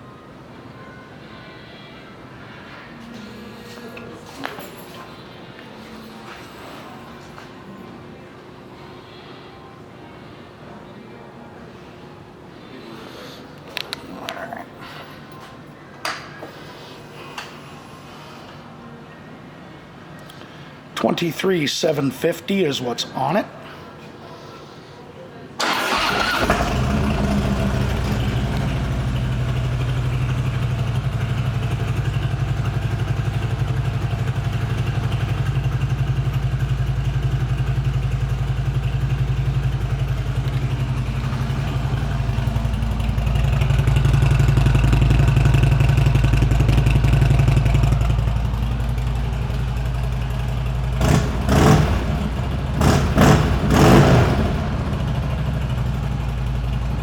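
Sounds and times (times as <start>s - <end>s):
motorcycle engine idling: 25.6s - 57.0s
motorcycle throttle blips: 25.6s - 57.0s.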